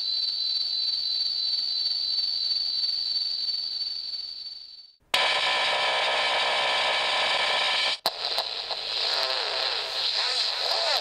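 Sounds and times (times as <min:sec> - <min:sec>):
buzzy electronic drone: 0:05.2 - 0:11.0.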